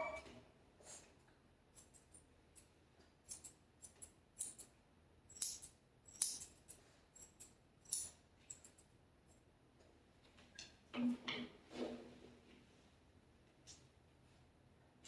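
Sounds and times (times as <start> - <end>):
grooming scissors snipping: 1.7 - 4.7.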